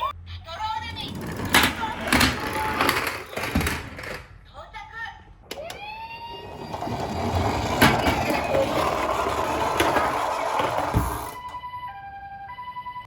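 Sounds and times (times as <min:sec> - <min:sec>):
toy cars rolling down cardboard: 0:01.0 - 0:04.3, 0:06.5 - 0:11.6.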